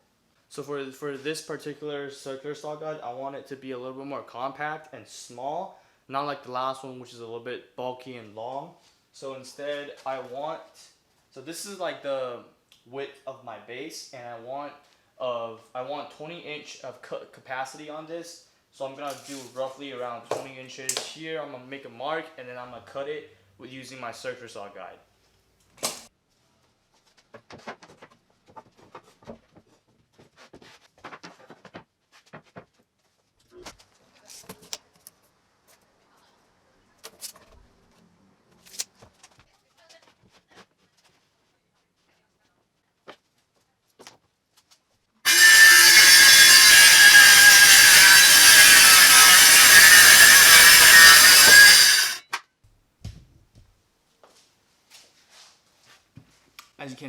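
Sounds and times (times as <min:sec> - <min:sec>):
circular saw cutting plywood: 0:19.1 - 0:19.5, 0:45.3 - 0:52.3.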